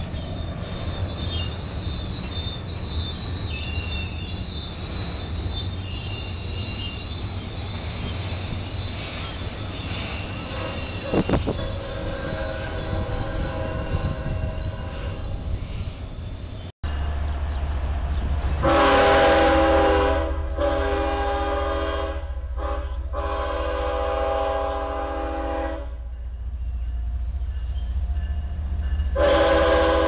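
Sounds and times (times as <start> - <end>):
high wheel squeal: 0.0 - 20.1
diesel locomotive rumbling: 0.0 - 30.0
train cars rolling past: 0.0 - 30.0
multi-chime train horn: 10.3 - 15.3, 18.6 - 30.0.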